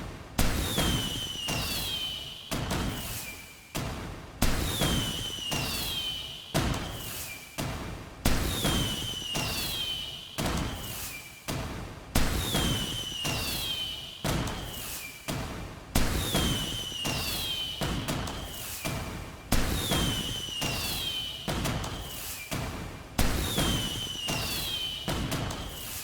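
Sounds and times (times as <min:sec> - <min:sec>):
fireworks bangs and rumble: 0:00.4 - 0:26.0
firework whistle falling in pitch: 0:00.7 - 0:03.4, 0:04.7 - 0:07.3, 0:08.5 - 0:11.2, 0:12.4 - 0:15.0, 0:16.2 - 0:19.0, 0:19.7 - 0:22.4, 0:23.4 - 0:26.0.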